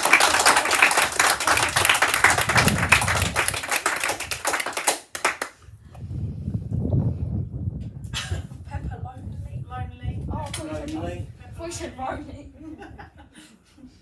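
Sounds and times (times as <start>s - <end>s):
people clapping rapidly: 0.0s - 5.6s.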